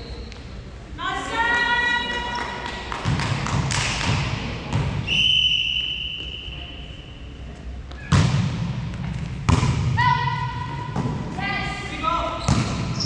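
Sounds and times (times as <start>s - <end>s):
long whistle blast: 5.1s - 6.8s.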